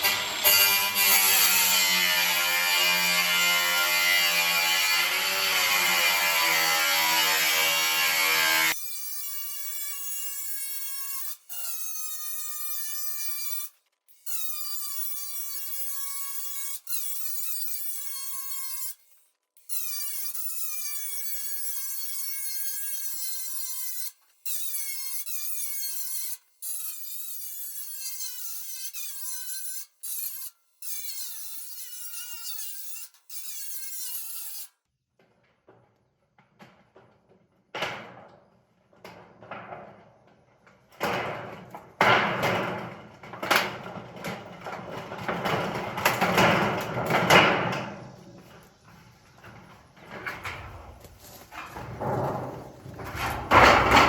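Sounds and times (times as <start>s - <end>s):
power tool cutting: 0.0s - 34.7s.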